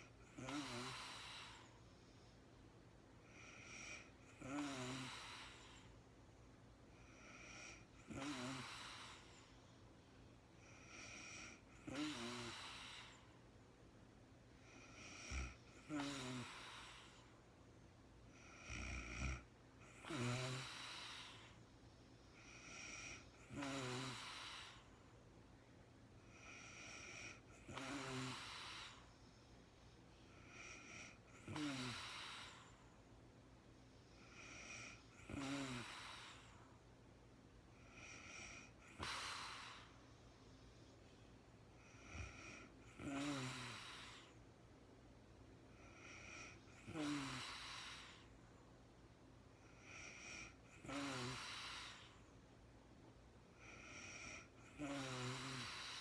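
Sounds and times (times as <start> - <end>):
woman snoring: 0.0 - 1.8, 3.2 - 6.0, 7.0 - 9.5, 10.6 - 13.4, 14.6 - 17.4, 18.3 - 21.6, 22.3 - 24.9, 26.3 - 29.1, 30.3 - 32.8, 34.1 - 36.6, 37.7 - 40.0, 41.8 - 44.4, 45.8 - 48.3, 49.6 - 52.2, 53.6 - 56.0.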